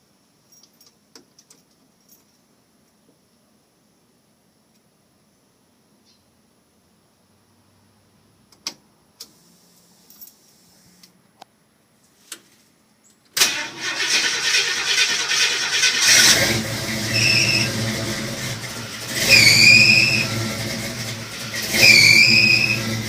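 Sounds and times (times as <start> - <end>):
engine revving: 13.4 - 23.0
starter cranking engine: 13.4 - 23.0
high squeal: 16.9 - 18.0, 18.7 - 20.8, 21.5 - 23.0.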